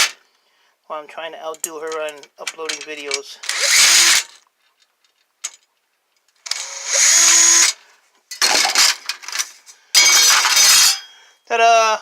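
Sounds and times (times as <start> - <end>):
cordless drill whirring: 3.5 - 4.3, 6.5 - 7.8.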